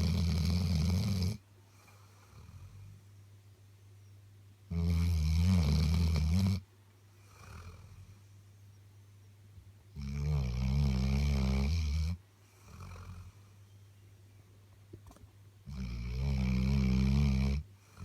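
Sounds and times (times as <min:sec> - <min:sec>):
dog snoring: 0:00.0 - 0:03.0, 0:04.7 - 0:06.6, 0:07.2 - 0:08.3, 0:09.9 - 0:13.5, 0:15.6 - 0:18.0.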